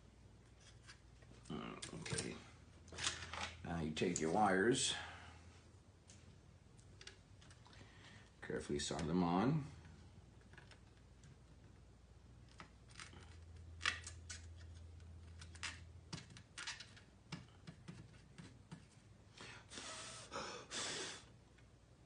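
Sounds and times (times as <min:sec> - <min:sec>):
short hisses: 0:19.7 - 0:21.3.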